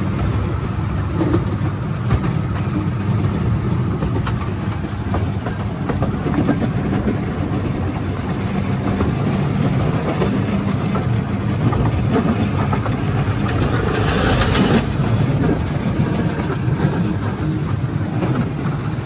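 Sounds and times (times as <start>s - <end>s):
rail car rumbling on track: 0.0s - 19.0s.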